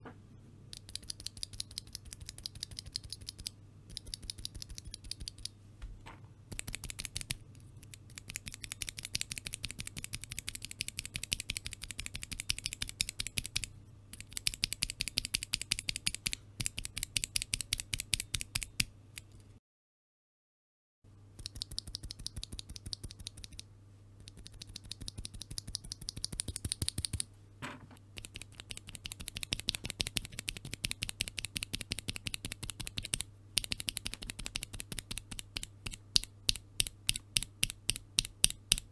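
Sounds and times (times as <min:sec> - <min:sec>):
mechanical keyboard switches clacking: 0:00.7 - 0:05.5, 0:24.3 - 0:27.2, 0:28.2 - 0:38.9.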